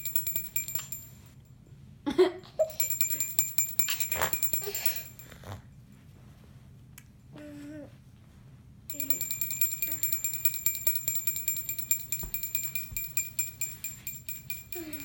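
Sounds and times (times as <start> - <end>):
small bell ringing rapidly: 0.0 - 1.3, 2.6 - 5.4, 8.9 - 15.0.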